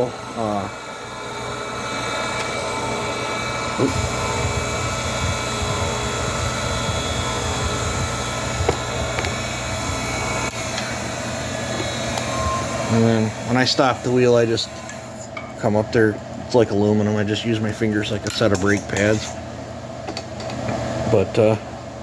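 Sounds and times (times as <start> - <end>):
grinder motor whine: 0.0 - 15.0.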